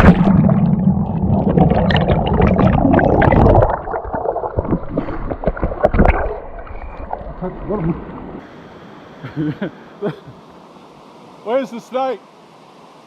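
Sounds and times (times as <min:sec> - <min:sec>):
water splashing and gurgling: 0:00.0 - 0:08.4.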